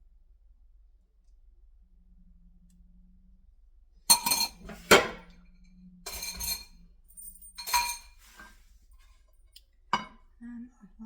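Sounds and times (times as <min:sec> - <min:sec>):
metal spoon scraping a dish: 0:04.1 - 0:05.3, 0:06.1 - 0:06.7, 0:07.6 - 0:08.6.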